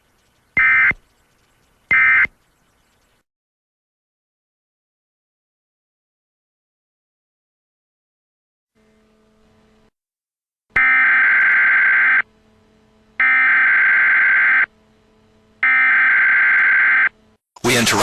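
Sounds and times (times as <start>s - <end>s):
buzzing digital data tones: 0.0s - 3.2s, 10.8s - 12.3s, 13.2s - 14.7s, 15.6s - 17.2s.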